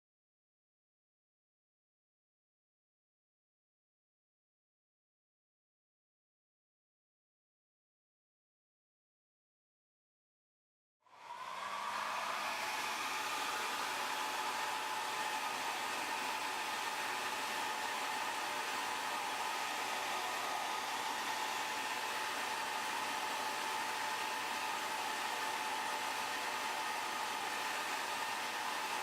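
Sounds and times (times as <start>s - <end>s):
hot-air blower rushing: 11.1s - 29.0s.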